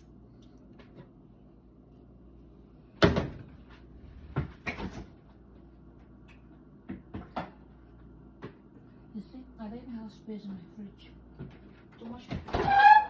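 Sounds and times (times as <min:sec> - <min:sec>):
refrigerator door knocks and clunks: 0:03.0 - 0:03.5.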